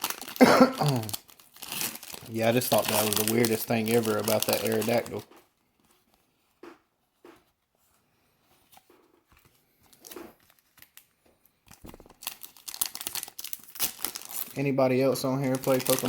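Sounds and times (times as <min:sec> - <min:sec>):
foil wrapper crinkling and tearing: 0:00.0 - 0:06.0, 0:09.4 - 0:16.0
card handling rustles: 0:01.0 - 0:16.0.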